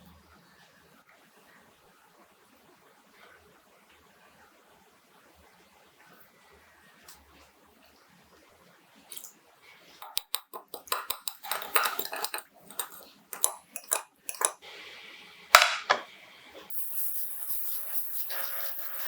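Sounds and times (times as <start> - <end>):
dishes and utensils clattering: 10.0 - 14.6, 15.6 - 16.1
steady hiss: 14.6 - 19.0.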